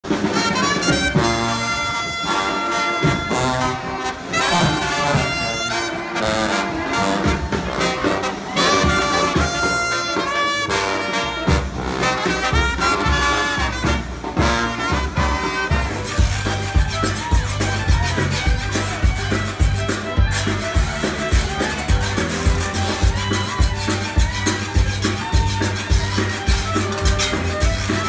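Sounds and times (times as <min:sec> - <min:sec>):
jazzy brass music: 0:00.0 - 0:28.0
bass line: 0:12.5 - 0:28.0.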